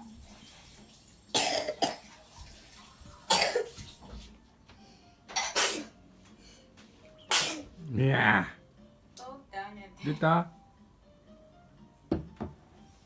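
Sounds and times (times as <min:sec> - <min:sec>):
person coughing: 0:01.4 - 0:02.0, 0:03.3 - 0:03.7, 0:07.3 - 0:07.7.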